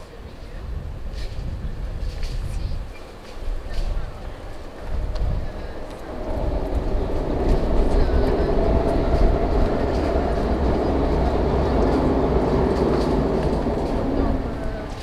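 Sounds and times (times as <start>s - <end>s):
train rumbling past: 0.0s - 15.0s
wheels clicking on rails: 3.3s - 15.0s.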